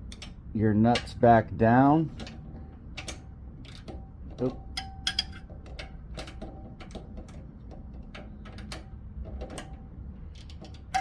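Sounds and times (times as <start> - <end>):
wrench clicking on nuts: 2.9 - 11.0.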